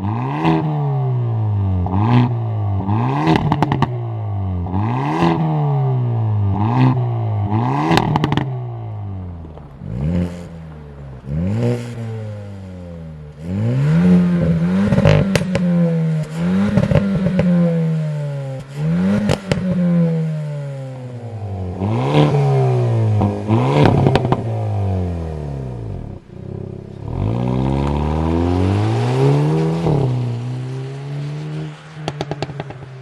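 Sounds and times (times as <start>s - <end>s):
car engine revving: 0.0s - 33.0s
exhaust pops and crackles: 1.8s - 4.0s, 7.5s - 12.1s, 13.0s - 20.6s, 21.6s - 33.0s.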